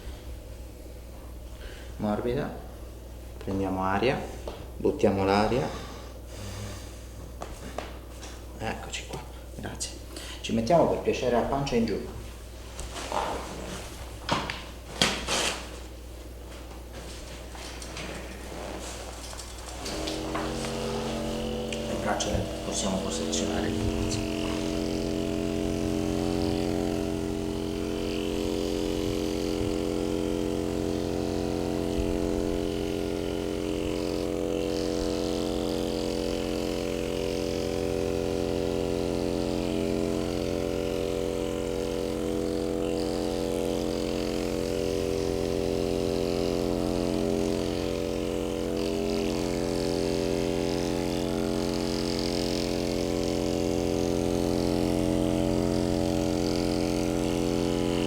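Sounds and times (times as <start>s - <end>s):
small electric motor droning: 17.7s - 58.0s.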